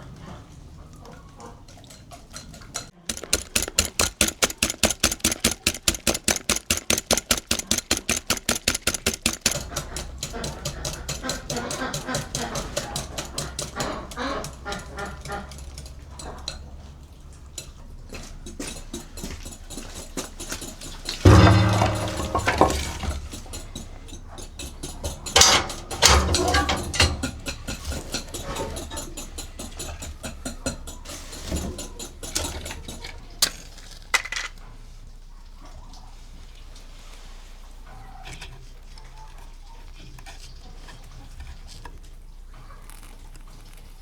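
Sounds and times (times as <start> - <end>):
metal cookware clinking: 1.7 - 34.6
loud thumps: 3.1 - 11.2, 21.2 - 23.6.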